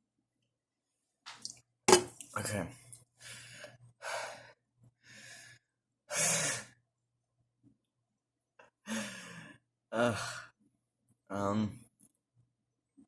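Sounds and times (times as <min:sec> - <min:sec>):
man breathing heavily and sighing: 0:08.8 - 0:10.6.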